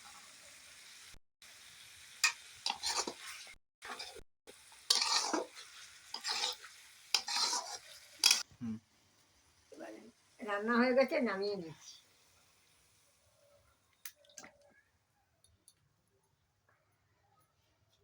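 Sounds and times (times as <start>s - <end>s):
spoon scraping a pan: 2.2s - 4.2s, 4.8s - 8.5s.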